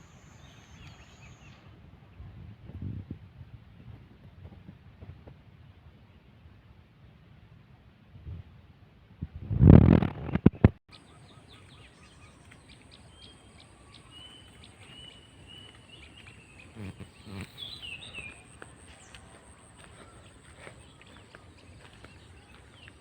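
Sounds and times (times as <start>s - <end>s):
small birds chirping: 10.2s - 23.0s.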